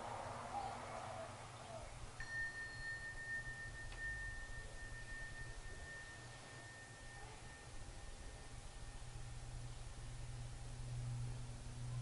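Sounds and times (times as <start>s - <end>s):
metal instrument ringing high tone: 2.2s - 9.8s.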